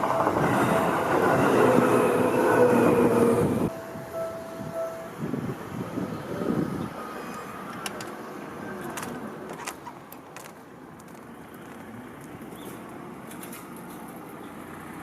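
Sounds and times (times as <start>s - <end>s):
train wheels clattering on track: 0.0s - 3.6s
street noise: 0.0s - 15.0s.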